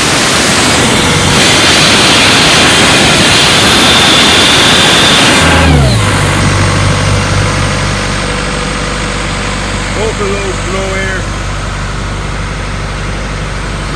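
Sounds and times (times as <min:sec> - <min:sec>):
compressed air hissing: 0:00.0 - 0:09.0
compressor engine idling: 0:00.0 - 0:13.9.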